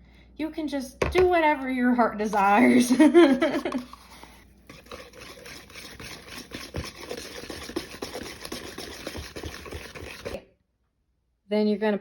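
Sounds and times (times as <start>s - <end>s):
utensil stirring batter in bowl: 2.3s - 10.4s.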